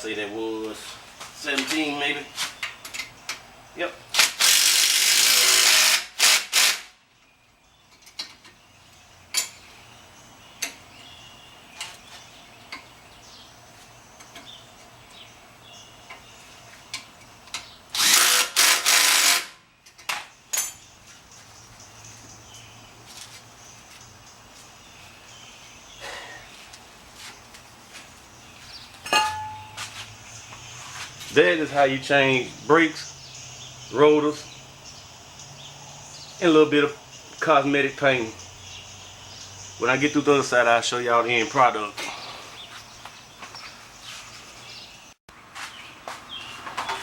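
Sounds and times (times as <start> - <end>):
power tool bursts: 4.2 - 6.9, 17.9 - 19.6
hand tools clicking and clinking: 29.0 - 29.9.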